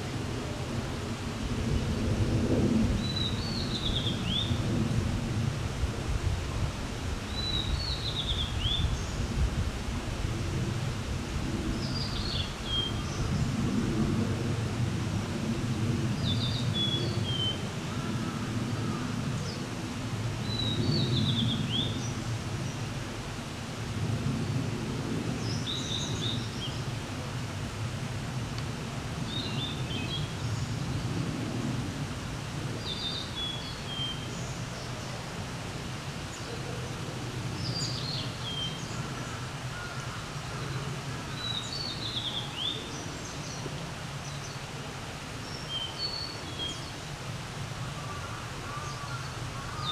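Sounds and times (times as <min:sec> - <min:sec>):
songbird singing: 0:03.0 - 0:04.6, 0:07.3 - 0:09.2, 0:11.8 - 0:13.5, 0:16.2 - 0:19.7, 0:20.4 - 0:22.8, 0:29.3 - 0:31.1, 0:32.8 - 0:35.2, 0:37.5 - 0:44.6, 0:45.4 - 0:47.0.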